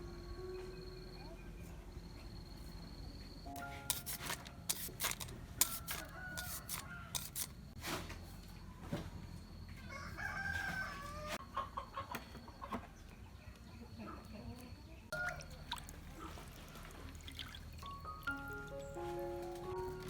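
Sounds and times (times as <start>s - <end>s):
rooster crowing: 5.6s - 7.5s, 9.8s - 11.4s, 15.1s - 15.7s
chicken clucking: 11.4s - 13.0s.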